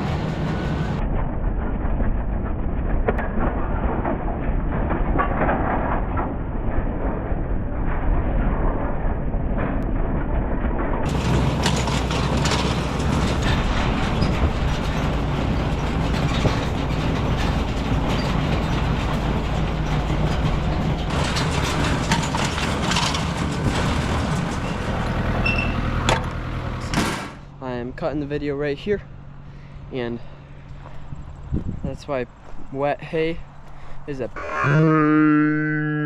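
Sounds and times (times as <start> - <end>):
tractor engine running: 0.0 - 2.9, 11.0 - 33.7
baler rattling and clattering: 11.0 - 28.3.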